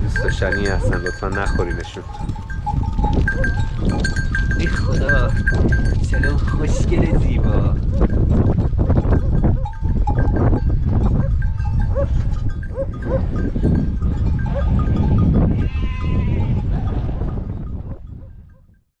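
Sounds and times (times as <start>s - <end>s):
small animal bells ringing: 0.0s - 16.8s
livestock bleating: 14.4s - 17.0s.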